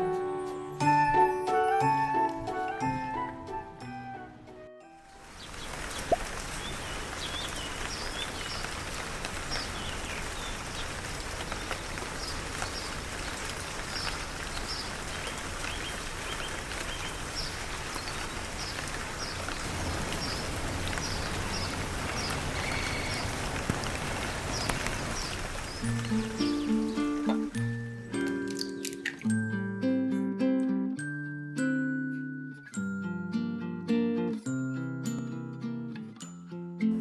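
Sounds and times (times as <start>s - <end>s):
steady rain falling: 5.0s - 28.8s
bird chirping: 14.0s - 27.5s.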